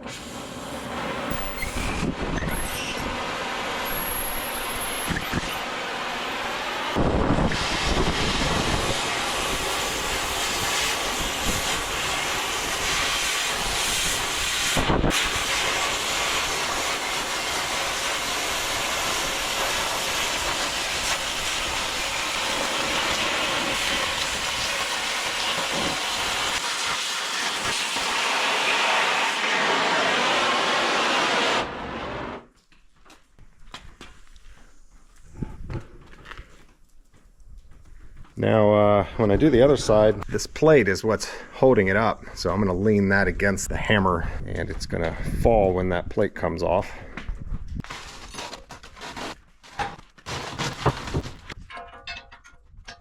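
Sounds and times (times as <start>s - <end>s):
cutting torch hissing: 0.0s - 32.4s.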